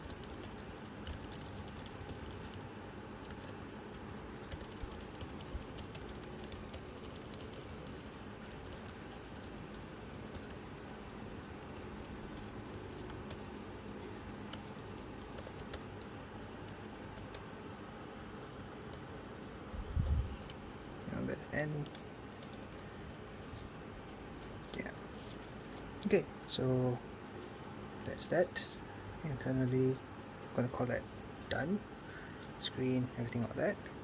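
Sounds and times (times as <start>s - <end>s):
laptop keyboard keys clicking: 0.0s - 17.6s, 20.0s - 22.9s
steady low hiss: 0.0s - 34.0s.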